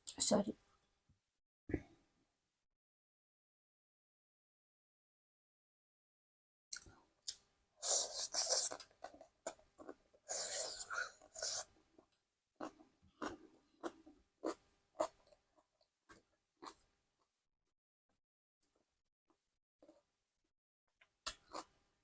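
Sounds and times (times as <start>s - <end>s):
food crunching: 8.2s - 16.8s, 21.2s - 21.8s.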